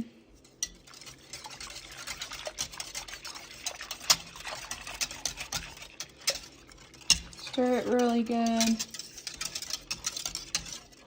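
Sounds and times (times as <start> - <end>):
whisk clicking against metal pot: 0.4 - 11.0.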